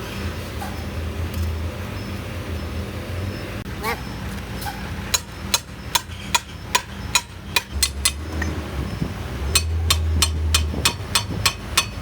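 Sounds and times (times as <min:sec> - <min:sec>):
hammer striking metal: 0:05.1 - 0:08.5, 0:09.5 - 0:12.0.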